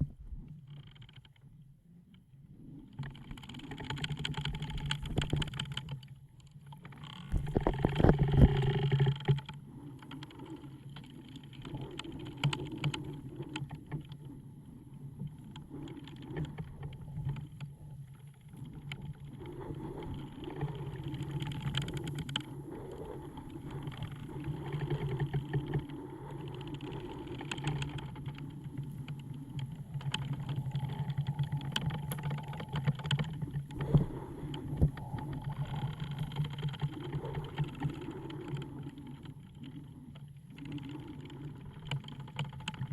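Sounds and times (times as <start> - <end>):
steady low hum: 0.0 - 0.6, 7.3 - 8.7
wooden timbers creaking: 3.1 - 6.1, 6.9 - 9.6, 26.8 - 38.6.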